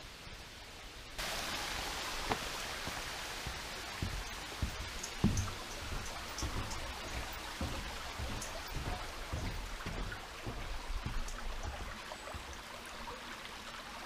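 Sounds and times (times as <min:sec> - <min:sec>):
stream water rushing: 0:01.1 - 0:14.0
dull low thumps: 0:02.8 - 0:12.7.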